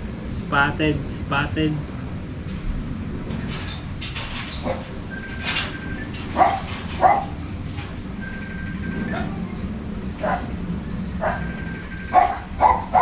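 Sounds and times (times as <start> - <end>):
dog barking: 6.4 - 7.4, 10.2 - 10.5, 11.2 - 11.5, 12.1 - 13.0.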